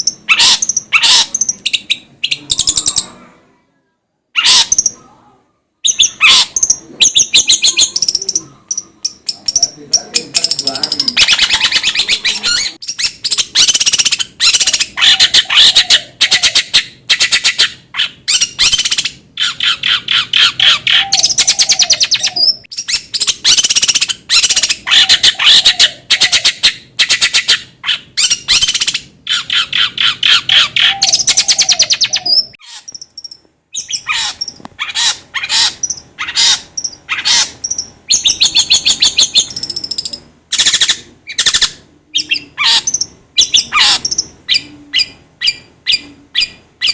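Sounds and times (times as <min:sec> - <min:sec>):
bird harsh rattling trills: 0:32.6 - 0:44.4.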